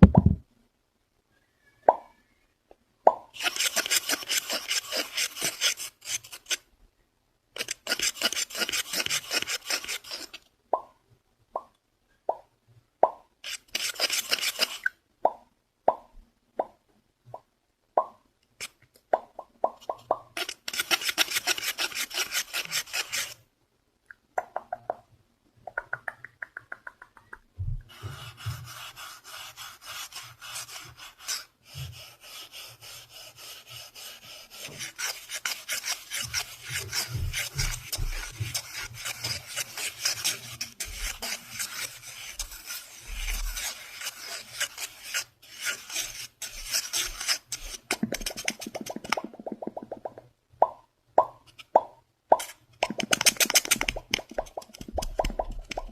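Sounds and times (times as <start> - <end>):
soft low thumps: 0.0 - 0.4, 27.6 - 27.9
fast scratching and rubbing: 3.3 - 6.6, 7.6 - 10.4, 13.4 - 14.9, 20.3 - 23.4, 27.9 - 49.9, 52.4 - 55.9
sharp pops: 47.9 - 55.9.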